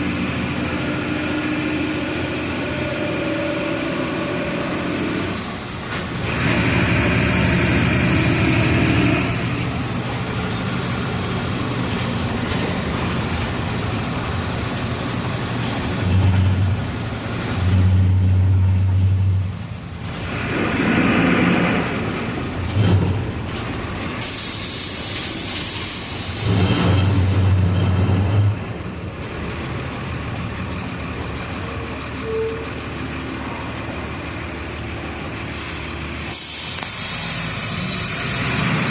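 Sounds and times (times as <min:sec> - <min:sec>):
bus diesel engine running: 0:00.0 - 0:38.9
short high beep: 0:06.4 - 0:08.9
air brake hiss: 0:24.2 - 0:26.7, 0:35.4 - 0:38.4.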